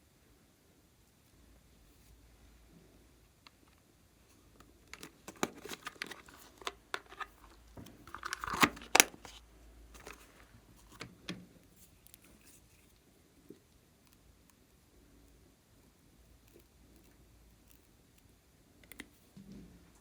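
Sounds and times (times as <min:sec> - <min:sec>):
crinkling handling noises: 0:03.6 - 0:13.0.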